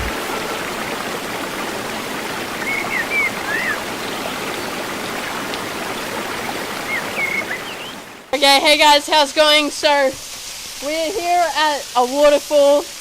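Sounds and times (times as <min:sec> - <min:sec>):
waterfall rushing: 0:00.0 - 0:10.0
bird chirps: 0:02.6 - 0:04.1, 0:06.8 - 0:08.0.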